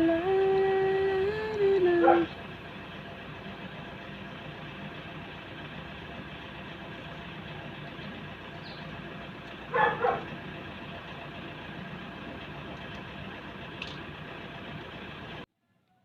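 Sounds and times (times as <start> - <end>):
steady machine hum: 0.0 - 15.5
dog barking: 2.0 - 2.4, 9.7 - 10.4.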